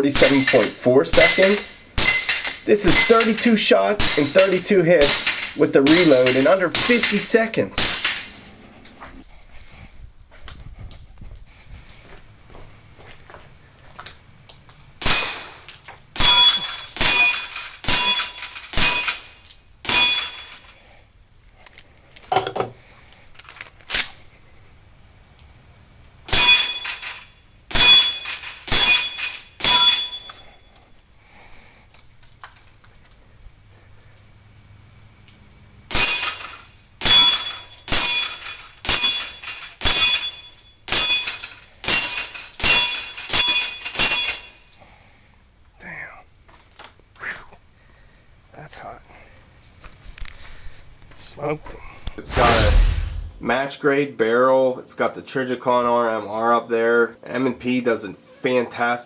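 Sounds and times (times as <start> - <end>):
steel target ringing: 0.0 - 8.4, 15.0 - 19.3, 19.9 - 20.6, 26.3 - 27.0, 27.7 - 30.4, 35.9 - 44.7
pistol shots: 15.0 - 15.6.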